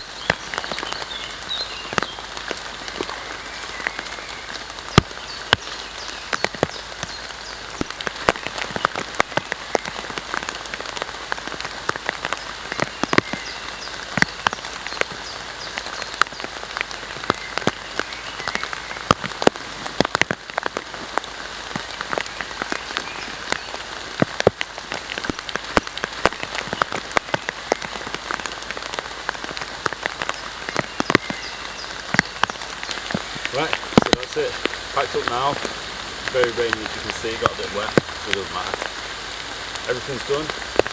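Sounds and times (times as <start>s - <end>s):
heavy rain hiss: 0.0s - 40.9s
raindrops clicking close by: 0.0s - 40.9s.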